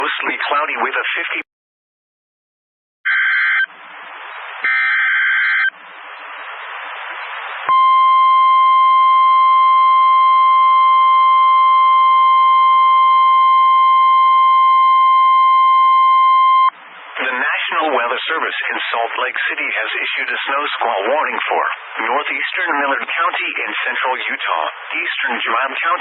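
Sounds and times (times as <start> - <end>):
steady warning alarm tone: 4.6 - 5.7, 7.7 - 16.7.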